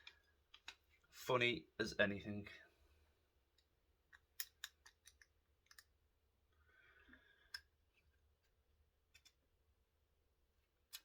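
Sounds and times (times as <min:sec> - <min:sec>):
small parts clicking and tapping: 0:03.5 - 0:06.0, 0:07.0 - 0:09.4.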